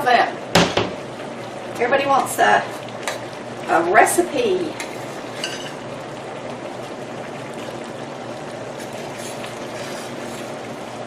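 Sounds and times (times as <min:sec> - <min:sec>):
pie filling bubbling in pot: 0:00.0 - 0:11.0.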